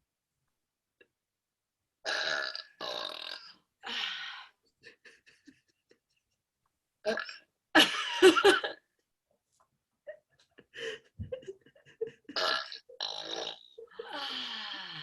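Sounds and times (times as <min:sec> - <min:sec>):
woman burping: 0:07.0 - 0:07.5, 0:12.4 - 0:15.0.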